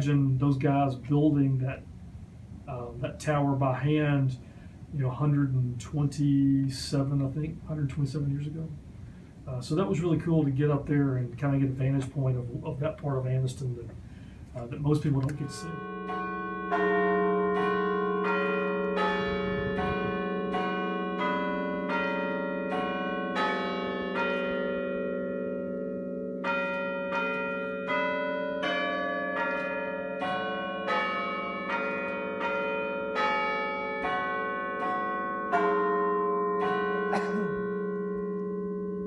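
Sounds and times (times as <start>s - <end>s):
church tower bells ringing: 14.8s - 39.0s.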